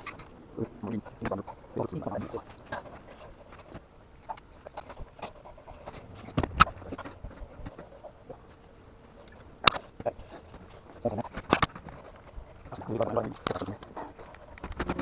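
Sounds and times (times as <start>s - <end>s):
sharp knocks: 6.0s - 7.3s.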